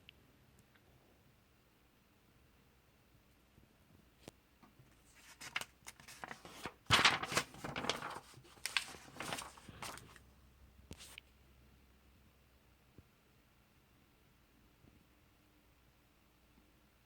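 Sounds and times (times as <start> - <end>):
paper pages rustling: 4.6 - 10.2.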